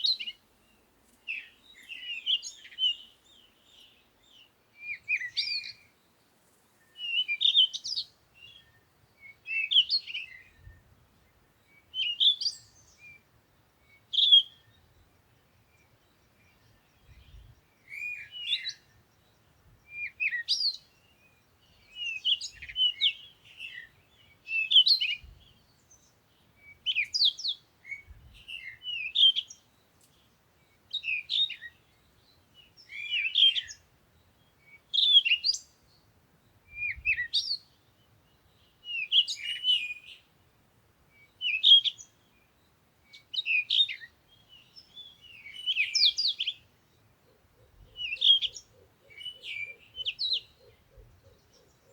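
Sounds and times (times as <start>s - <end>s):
bird chirping: 0.0s - 40.5s, 41.1s - 51.9s.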